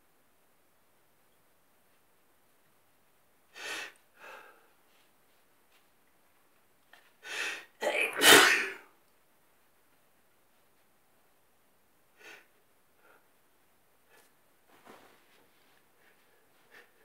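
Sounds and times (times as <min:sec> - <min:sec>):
person sneezing: 0:07.8 - 0:08.8.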